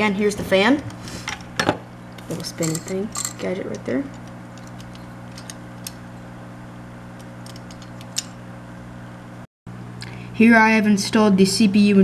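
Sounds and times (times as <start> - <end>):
light clicks of handled parts: 7.2 - 8.4.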